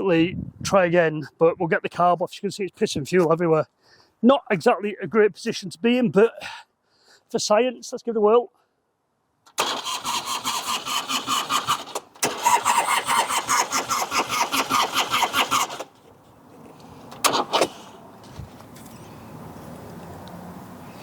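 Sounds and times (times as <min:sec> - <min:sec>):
motorcycle starter cranking: 0:09.5 - 0:16.1, 0:17.2 - 0:17.9.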